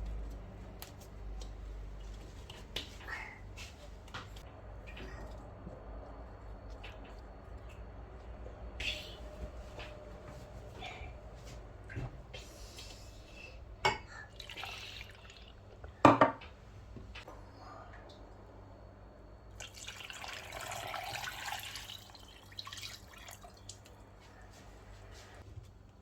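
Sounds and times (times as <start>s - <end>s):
liquid dripping and pouring: 14.4s - 15.8s, 19.5s - 24.0s.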